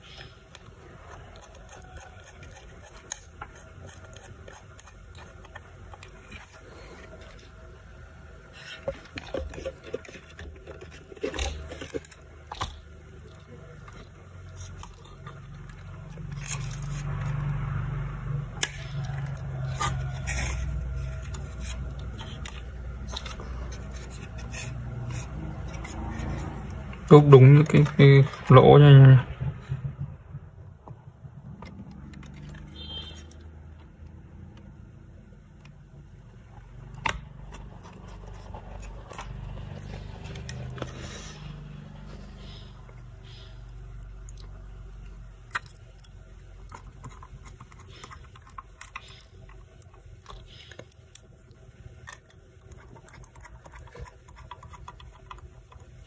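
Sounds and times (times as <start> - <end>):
computer parts scraping and clicking: 0.0 - 7.5, 8.5 - 17.6, 18.6 - 28.7, 37.0 - 41.4
low steady hum: 0.0 - 56.0.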